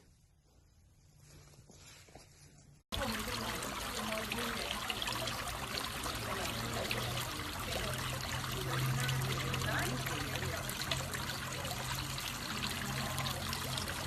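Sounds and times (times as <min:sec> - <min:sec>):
running trickling water: 0:02.9 - 0:14.0.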